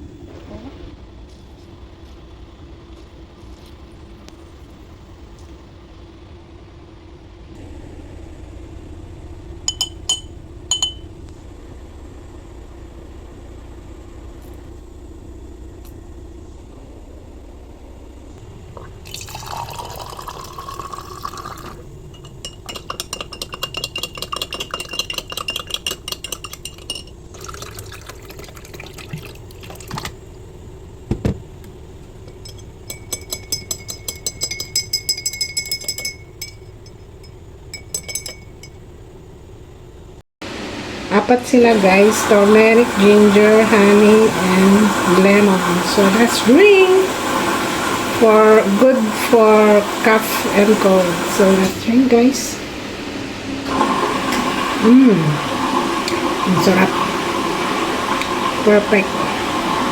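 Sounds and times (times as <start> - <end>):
spoon clinking against glass: 9.7 - 11.0, 22.1 - 27.6, 32.3 - 38.8
spoon stirring in glass: 9.7 - 11.0, 22.1 - 28.5, 32.3 - 38.8
liquid pouring into glass: 18.8 - 30.2.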